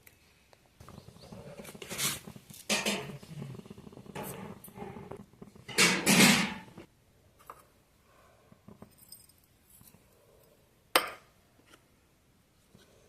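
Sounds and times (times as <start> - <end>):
rustling scrape: 1.2 - 6.8.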